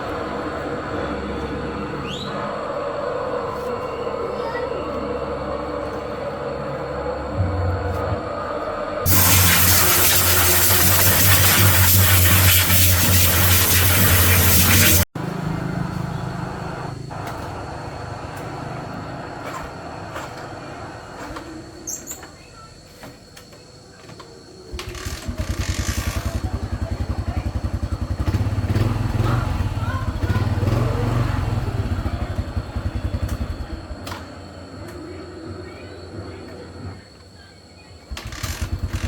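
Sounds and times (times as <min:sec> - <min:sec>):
motorcycle engine running: 0:24.7 - 0:34.1, 0:38.1 - 0:39.0.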